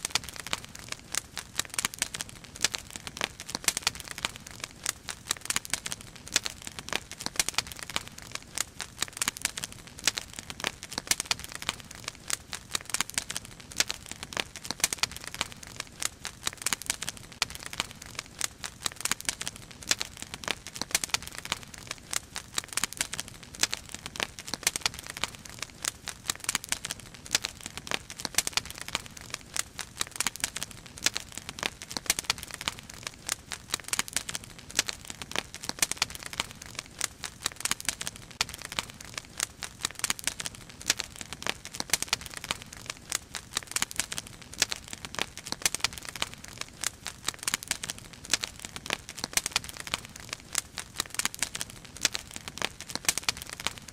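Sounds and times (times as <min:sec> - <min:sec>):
wood fire crackling: 0:00.0 - 0:53.9.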